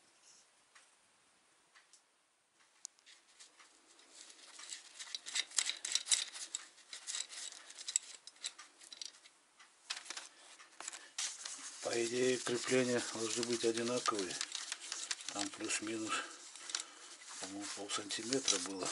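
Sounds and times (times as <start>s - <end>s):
hand tools clicking on metal parts: 4.2s - 9.3s, 9.9s - 18.9s.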